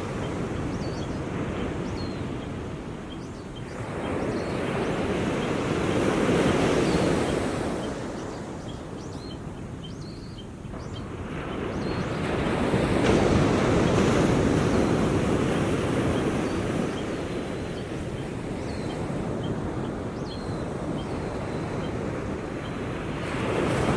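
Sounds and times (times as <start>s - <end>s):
small waves washing onto shore: 11.0s - 23.9s.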